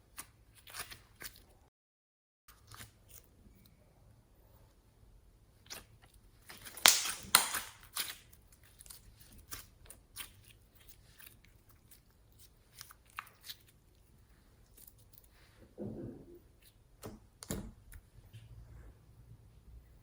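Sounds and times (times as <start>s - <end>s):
slime squishing and popping: 6.7s - 8.2s.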